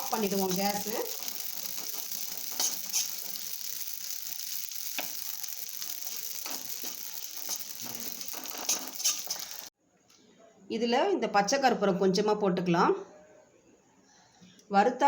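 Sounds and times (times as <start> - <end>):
sharp crackles: 0.0 - 9.7
seeds sizzling in a pan: 0.0 - 9.8.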